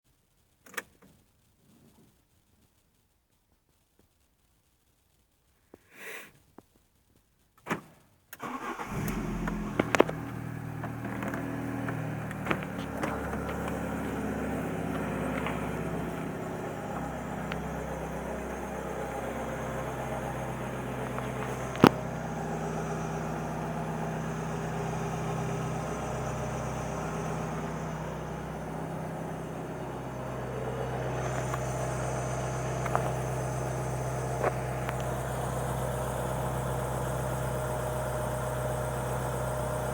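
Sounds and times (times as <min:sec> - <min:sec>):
car engine starting and idling: 0:08.4 - 0:39.9.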